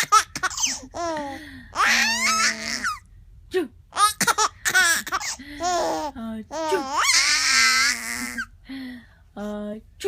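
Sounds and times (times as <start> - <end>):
baby laughing: 0.0 - 3.0, 4.0 - 8.5
baby squealing: 1.8 - 3.0, 4.8 - 8.4.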